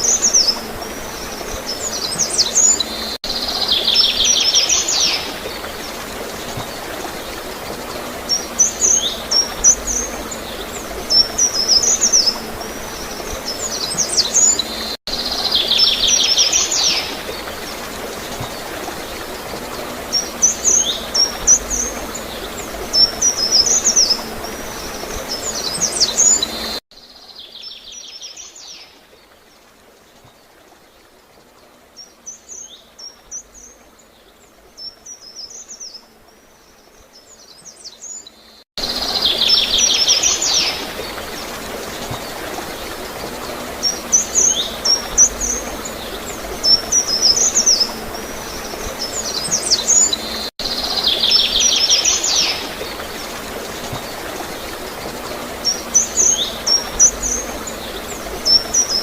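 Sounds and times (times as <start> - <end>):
small birds chirping: 0.0 - 28.9
flowing water gurgling: 0.0 - 59.0.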